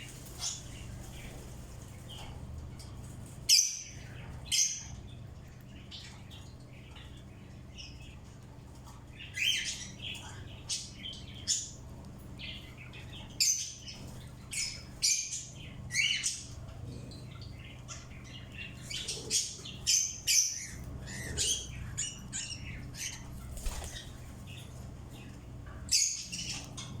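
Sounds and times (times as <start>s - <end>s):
birds giving high calls: 0.0s - 2.3s, 12.4s - 27.0s
steady low hum: 0.0s - 27.0s.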